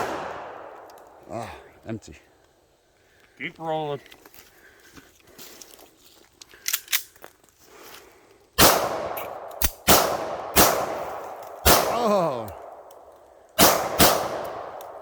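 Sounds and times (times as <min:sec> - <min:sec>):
pistol shots echoing: 0:00.0 - 0:01.2, 0:08.6 - 0:15.0.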